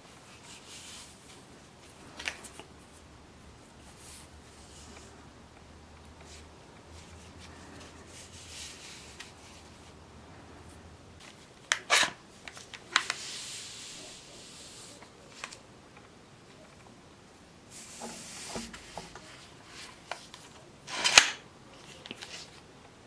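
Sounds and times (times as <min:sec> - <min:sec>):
hands rubbing small objects: 0:12.5 - 0:15.6.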